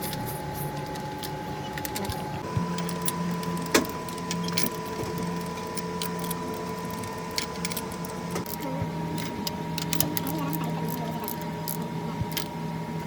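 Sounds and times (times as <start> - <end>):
car engine running: 1.9 - 12.5.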